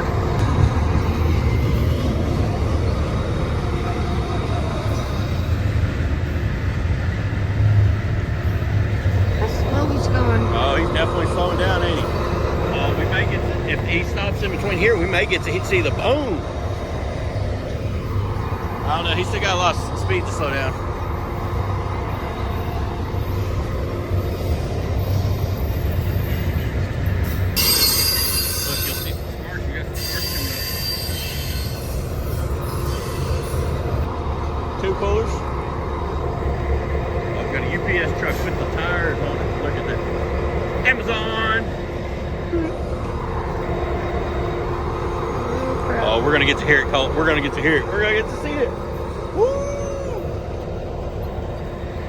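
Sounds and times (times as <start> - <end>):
train wheels rumbling on rail: 0.0 - 52.0
high-pitched brake squeal: 27.2 - 33.9.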